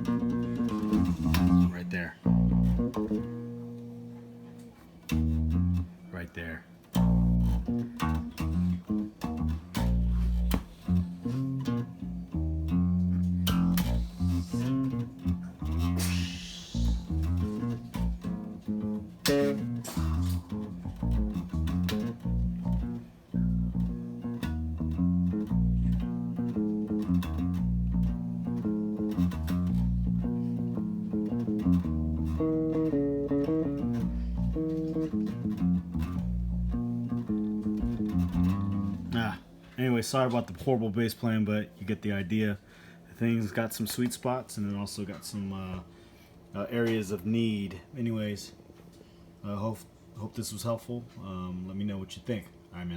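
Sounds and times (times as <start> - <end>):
electric bass guitar riffs: 0.0 - 40.5.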